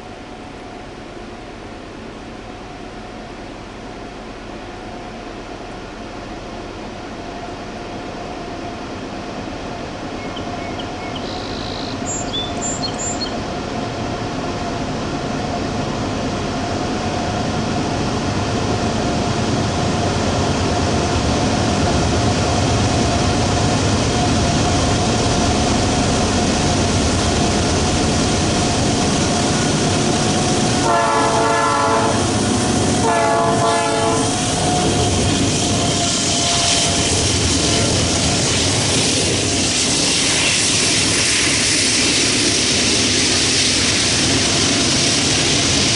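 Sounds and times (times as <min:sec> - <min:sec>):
diesel locomotives rumbling: 0:00.0 - 0:45.9
locomotive horn blasts: 0:30.8 - 0:32.4, 0:33.0 - 0:35.0.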